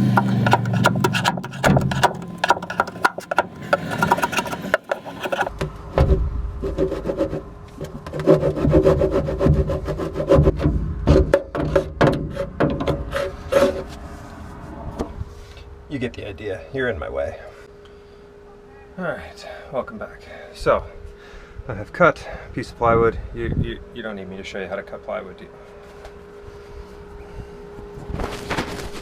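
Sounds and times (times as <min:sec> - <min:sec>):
saw cutting plywood: 0:00.0 - 0:05.5
wood scraping and knocking: 0:00.0 - 0:05.6.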